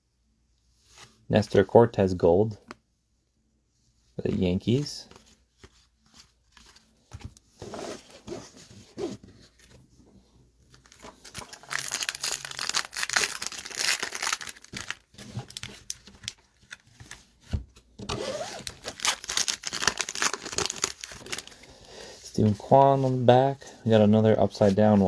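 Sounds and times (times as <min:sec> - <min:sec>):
foil wrapper crinkling and tearing: 0:10.8 - 0:17.2, 0:18.4 - 0:21.6.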